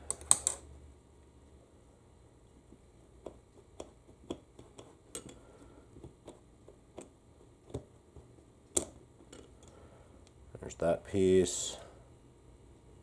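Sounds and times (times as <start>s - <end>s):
light clicks and taps on metal parts: 3.2s - 10.4s.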